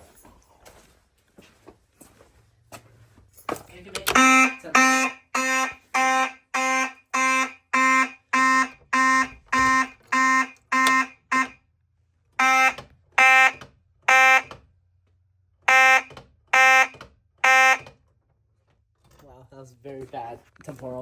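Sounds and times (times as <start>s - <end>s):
fire alarm horn pulsing: 4.0s - 11.6s, 12.4s - 14.6s, 15.6s - 17.9s.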